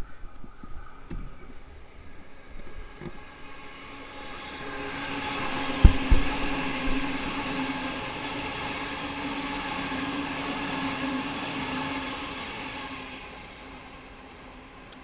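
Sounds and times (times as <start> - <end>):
electric train rumbling: 0.0 - 15.0
thumps: 0.4 - 8.0.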